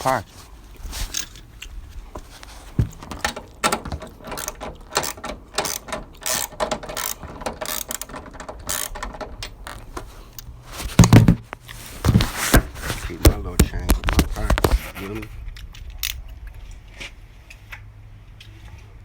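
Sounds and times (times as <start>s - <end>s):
ratchet wrench clicking: 4.2s - 9.8s.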